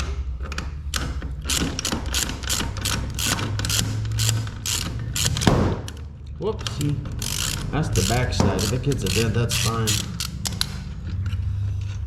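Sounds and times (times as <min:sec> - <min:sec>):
ratchet wrench clicking: 0:01.4 - 0:05.5, 0:07.2 - 0:10.7.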